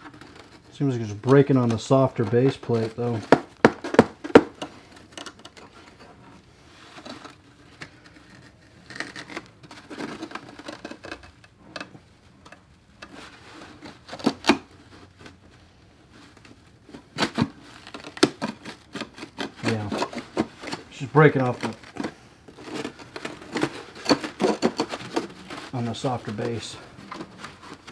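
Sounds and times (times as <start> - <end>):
ceramic plate scraping and grating: 17.0 - 27.9.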